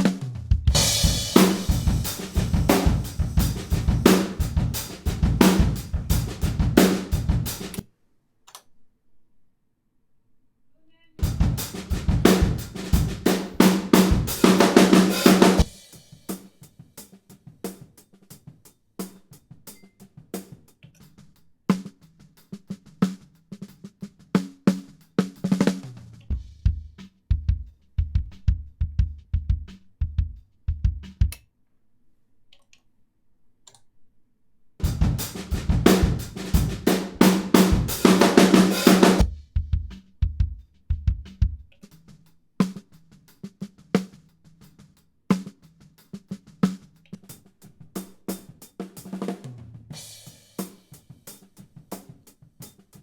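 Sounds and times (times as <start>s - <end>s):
drum kit playing steady beat: 0.0s - 7.8s, 11.2s - 31.4s, 34.8s - 53.0s
kick drum thuds: 0.4s - 7.7s, 11.2s - 13.4s, 26.3s - 31.4s, 34.8s - 41.7s.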